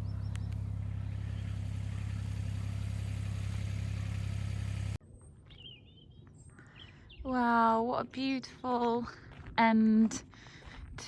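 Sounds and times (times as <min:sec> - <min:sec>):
vehicle engine idling: 0:00.0 - 0:05.0.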